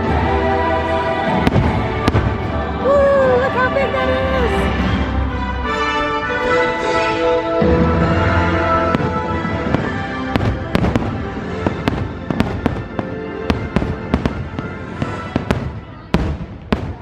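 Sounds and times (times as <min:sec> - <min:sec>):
show music: 0:00.0 - 0:16.9
fireworks cracks and bangs: 0:01.2 - 0:02.8, 0:08.3 - 0:17.0.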